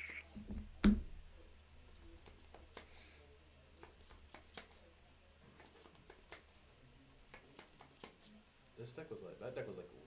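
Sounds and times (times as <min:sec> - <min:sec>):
clicks of cards handled: 0:03.8 - 0:04.8, 0:07.3 - 0:08.4.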